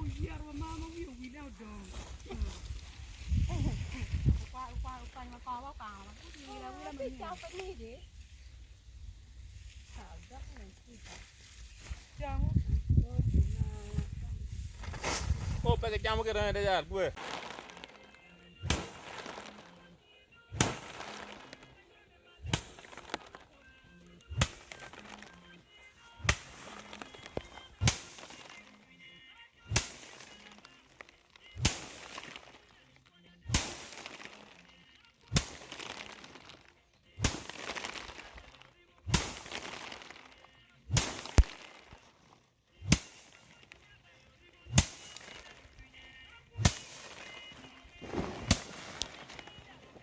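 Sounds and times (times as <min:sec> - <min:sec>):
rice stalks beaten on hard surface: 0:14.6 - 0:15.8, 0:17.1 - 0:19.8, 0:20.5 - 0:21.8, 0:22.4 - 0:23.6, 0:24.3 - 0:25.4, 0:26.0 - 0:28.8, 0:29.7 - 0:32.8, 0:33.5 - 0:43.9, 0:44.7 - 0:45.9, 0:46.6 - 0:50.0
heavy blows with crackling: 0:44.7 - 0:50.0.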